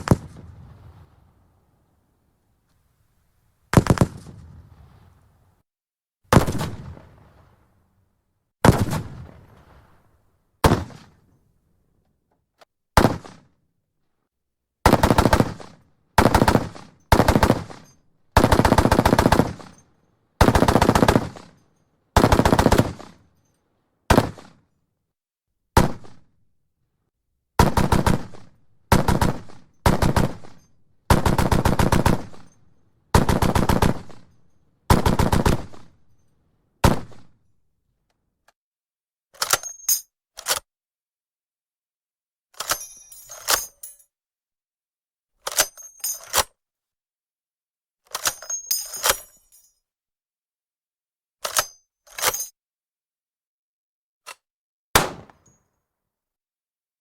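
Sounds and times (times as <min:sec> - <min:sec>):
machine gun rapid fire bursts: 0:14.9 - 0:17.8, 0:18.4 - 0:19.7, 0:20.4 - 0:21.5, 0:22.2 - 0:23.2, 0:27.6 - 0:32.4, 0:33.2 - 0:34.2, 0:34.9 - 0:35.9
machine gun single shots: 0:14.9 - 0:17.8, 0:22.2 - 0:23.2, 0:27.6 - 0:32.5, 0:55.0 - 0:55.6.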